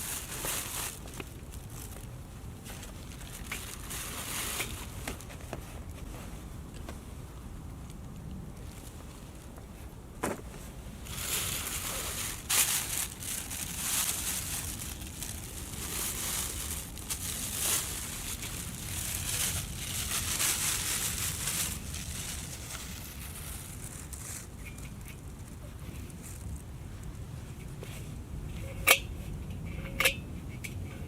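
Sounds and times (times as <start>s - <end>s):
packaging rustling and crinkling: 0.0s - 6.4s, 10.2s - 26.7s.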